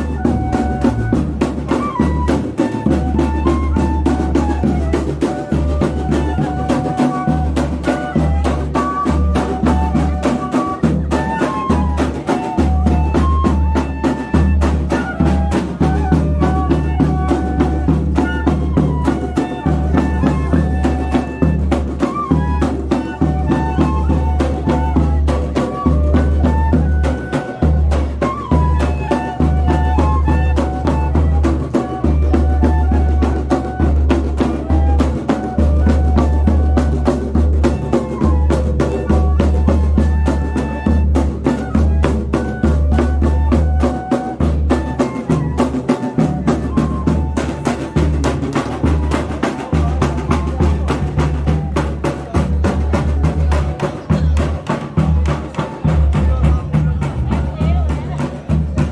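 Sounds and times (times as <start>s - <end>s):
bamboo fifes melody: 0.0s - 58.9s
drum and cymbal rhythm: 0.0s - 58.9s
heavy bass drum: 54.2s - 58.9s.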